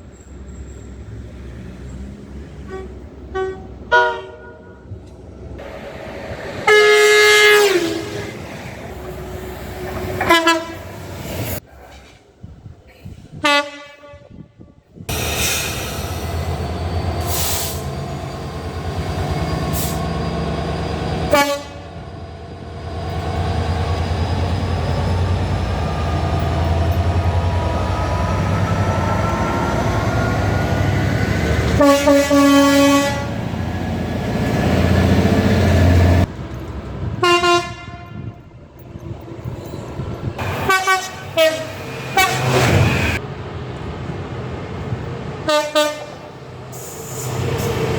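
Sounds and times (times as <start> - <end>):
rumble of passing trains: 0.0 - 47.9
train horn blasts: 2.6 - 4.9, 6.6 - 8.4, 9.1 - 11.0, 13.4 - 14.6, 21.3 - 22.0, 31.7 - 33.4, 37.2 - 38.4, 40.5 - 42.9, 45.5 - 46.2.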